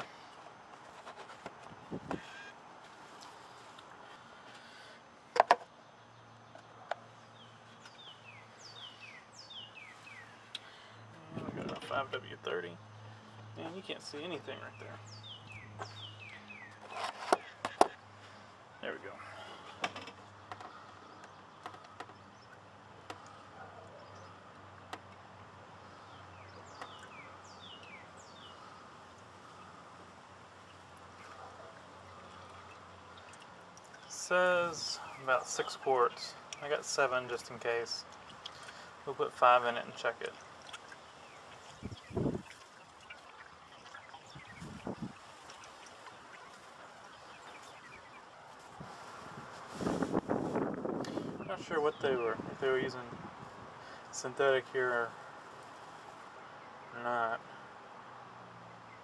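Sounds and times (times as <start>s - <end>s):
outdoor background noise: 0.0s - 59.0s
bird chirping: 5.8s - 11.2s, 11.8s - 25.1s, 25.8s - 29.8s, 40.8s - 48.5s.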